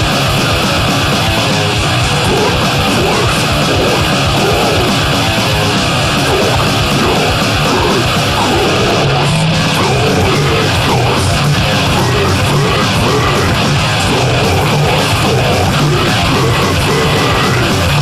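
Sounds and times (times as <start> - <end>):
distorted guitars: 0.0 - 18.0
drums: 0.0 - 18.0
harsh yelled vocals: 0.0 - 18.0.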